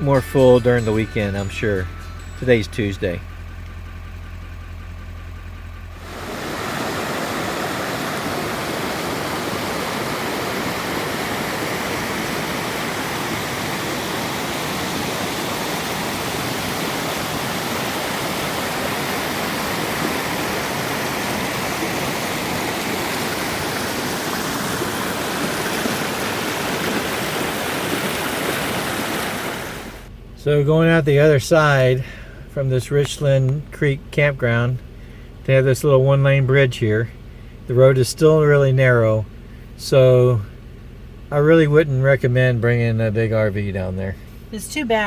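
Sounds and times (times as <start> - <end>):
creek water flowing: 6.0 - 30.1.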